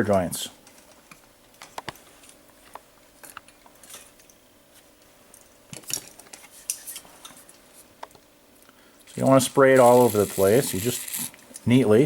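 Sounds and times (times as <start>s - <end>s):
small hard objects clattering: 9.1s - 11.4s.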